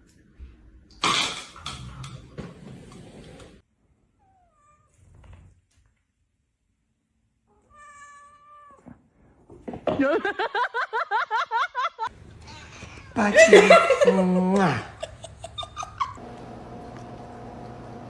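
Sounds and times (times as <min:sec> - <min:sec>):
cat meowing: 0:07.5 - 0:08.9.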